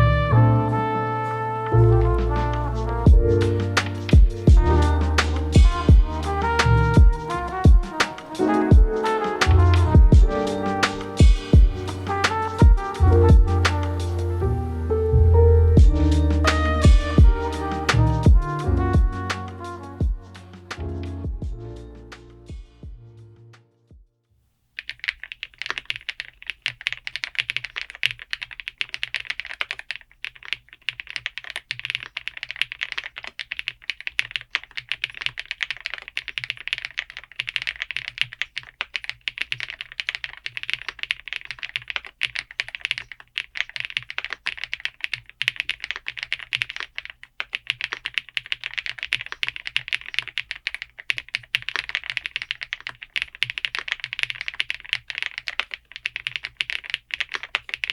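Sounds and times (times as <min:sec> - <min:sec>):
mechanical keyboard typing: 0:03.6 - 0:14.2, 0:24.8 - 0:57.9.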